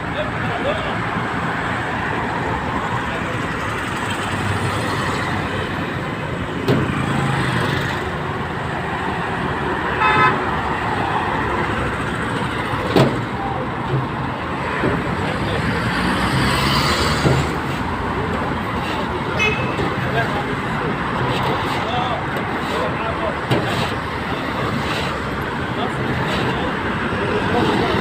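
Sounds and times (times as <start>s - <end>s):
cars passing: 0.0s - 28.0s
car horn toot: 9.9s - 10.5s, 19.4s - 19.8s.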